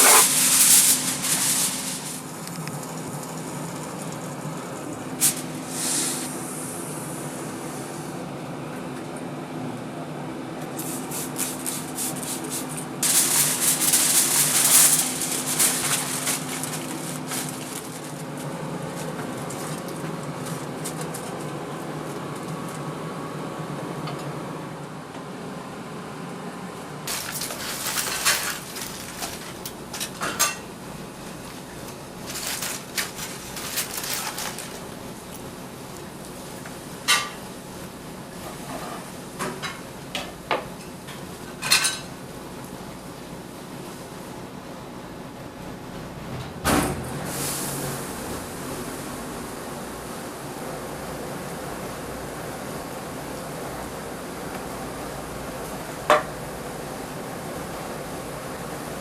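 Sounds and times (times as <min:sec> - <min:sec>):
dishes and utensils clattering: 0:27.1 - 0:30.7, 0:41.6 - 0:42.1.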